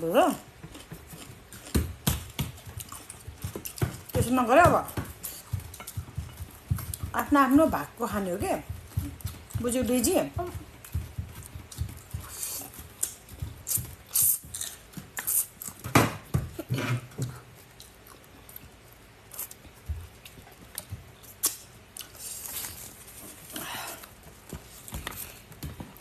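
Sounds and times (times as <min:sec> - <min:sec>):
chewing and mouth sounds: 0:00.3 - 0:07.2, 0:10.4 - 0:15.8, 0:17.3 - 0:25.4.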